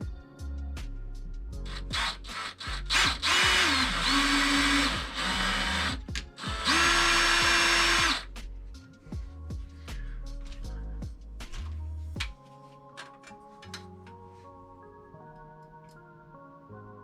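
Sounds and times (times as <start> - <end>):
power drill driving screws: 1.7 - 8.3.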